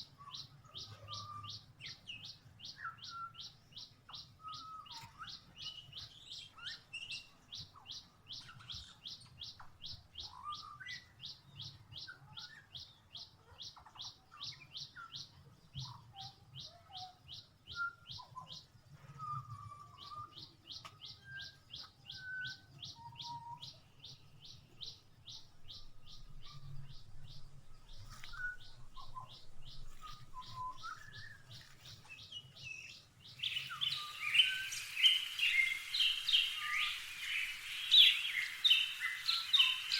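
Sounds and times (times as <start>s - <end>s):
bird whistling lower notes: 25.7s - 39.9s
bird chipping rapidly: 26.1s - 39.9s.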